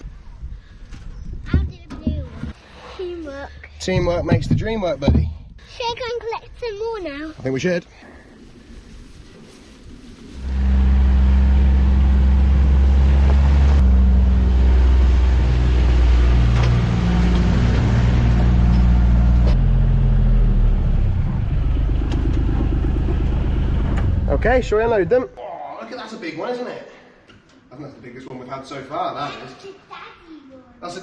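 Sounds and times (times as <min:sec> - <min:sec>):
farm vehicle engine running: 0:10.4 - 0:25.2.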